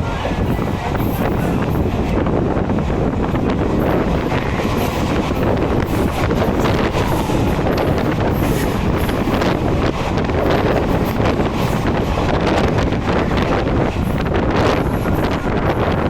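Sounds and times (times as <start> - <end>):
train wheels rushing on rails: 0.0 - 16.0
wind buffeting microphone: 0.0 - 16.0.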